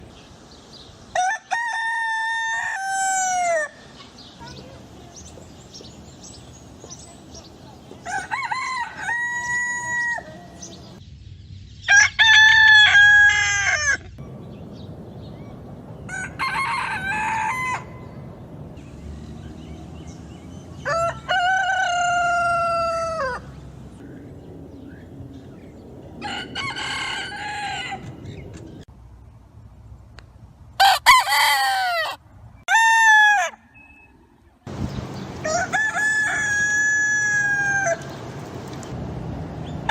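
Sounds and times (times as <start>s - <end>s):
roosters crowing: 1.1s - 3.8s, 8.0s - 11.0s, 11.8s - 14.2s, 16.0s - 18.4s, 20.0s - 23.7s, 26.2s - 28.5s, 30.8s - 33.9s, 34.7s - 38.3s.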